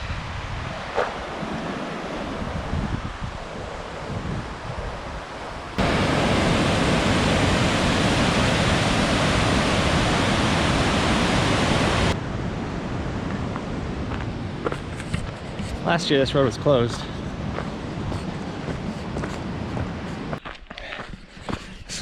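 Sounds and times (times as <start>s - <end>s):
river water rushing: 1.1s - 13.9s.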